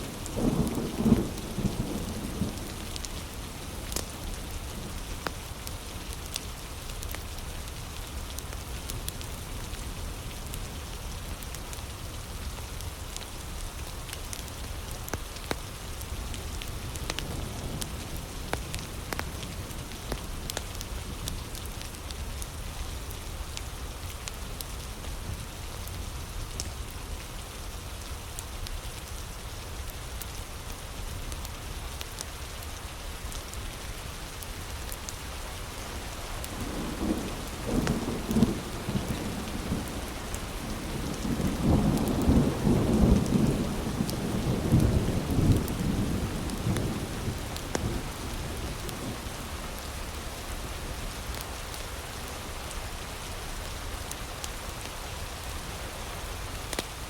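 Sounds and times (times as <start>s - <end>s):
heavy rain falling: 0.0s - 57.0s
thunder rolling: 35.6s - 49.9s.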